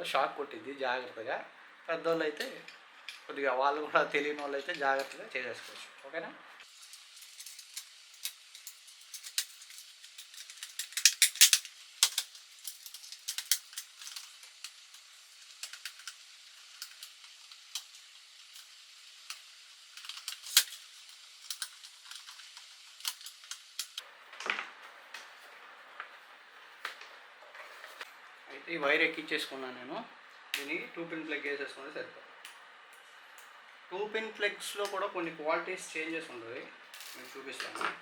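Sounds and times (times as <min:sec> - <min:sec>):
clicks of tools and parts: 0:07.3 - 0:14.8.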